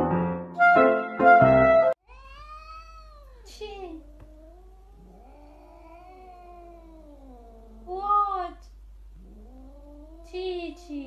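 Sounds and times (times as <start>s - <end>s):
cat yowling: 2.0s - 8.4s, 9.2s - 11.0s.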